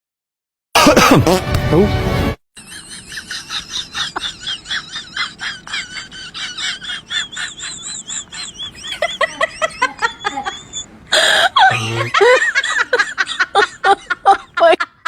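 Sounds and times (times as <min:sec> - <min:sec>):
birds chirping: 0:02.7 - 0:12.9.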